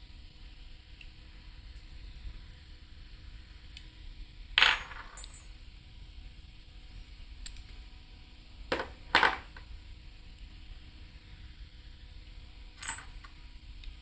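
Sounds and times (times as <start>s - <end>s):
metal parts clinking: 4.6s - 5.5s, 12.8s - 13.3s.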